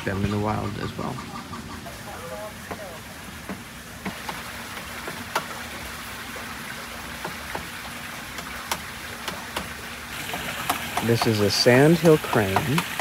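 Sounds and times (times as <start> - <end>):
outdoor background hiss: 0.0 - 13.0.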